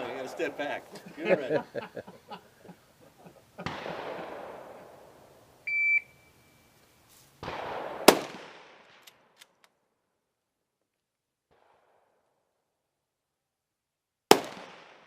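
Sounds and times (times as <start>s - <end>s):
rifle shot: 0.0s - 0.9s, 3.6s - 5.4s, 7.4s - 9.6s, 14.3s - 15.0s
shot timer beep: 5.7s - 6.6s.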